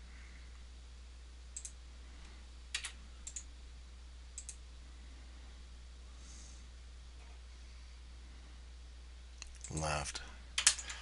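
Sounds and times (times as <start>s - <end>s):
steady low hum: 0.0s - 11.0s
computer mouse clicking: 1.6s - 1.8s, 2.7s - 3.5s, 4.4s - 4.6s.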